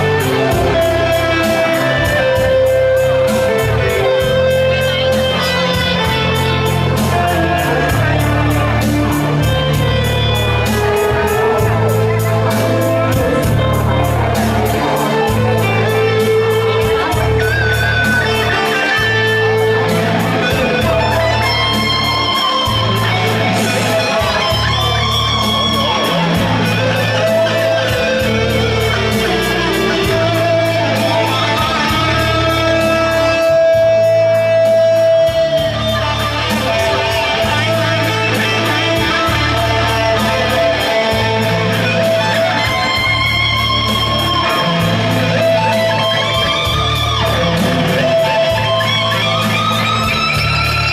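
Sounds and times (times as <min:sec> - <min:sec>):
low bass notes: 0:00.0 - 0:50.9
plucked electric guitar lead: 0:00.0 - 0:50.9.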